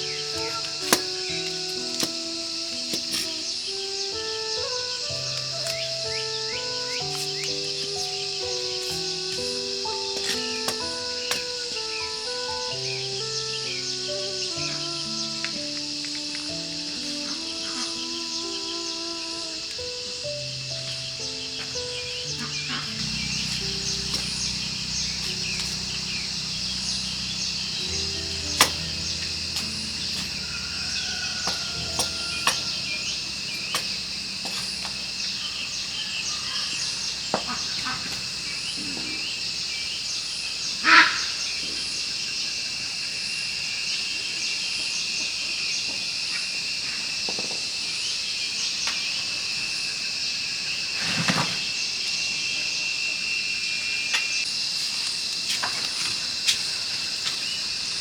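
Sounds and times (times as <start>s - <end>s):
insect chorus: 0.0s - 58.0s
knocks and clicks of hand work: 31.5s - 32.7s.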